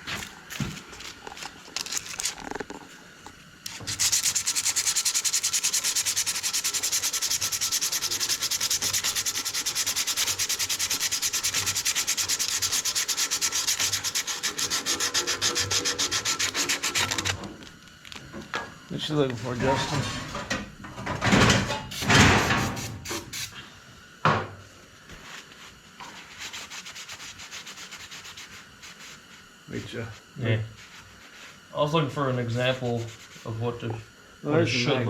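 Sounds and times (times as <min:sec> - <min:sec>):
sandpaper rubbing metal: 0:03.7 - 0:17.4, 0:26.2 - 0:29.4, 0:32.7 - 0:33.6.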